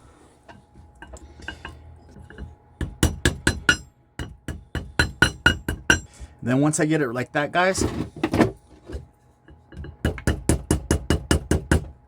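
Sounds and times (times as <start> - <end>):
hammer tapping copper sheet: 2.8 - 6.1, 10.0 - 11.9.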